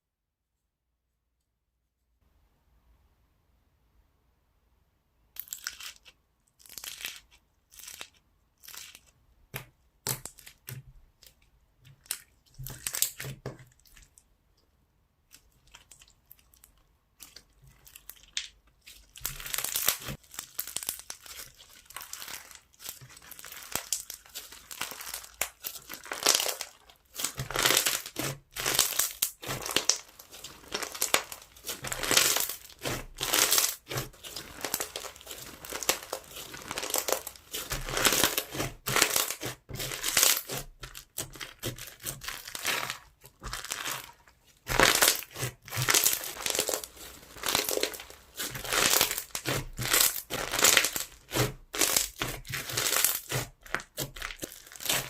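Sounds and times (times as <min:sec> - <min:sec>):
slime crackling and squishing: 0:05.4 - 0:14.3, 0:15.2 - 0:55.0.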